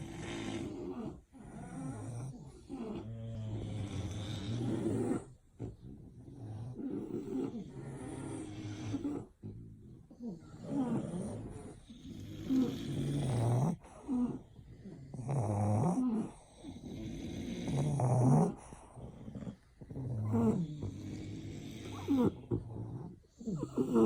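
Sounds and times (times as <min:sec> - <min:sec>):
dog snoring: 0:00.0 - 0:24.0.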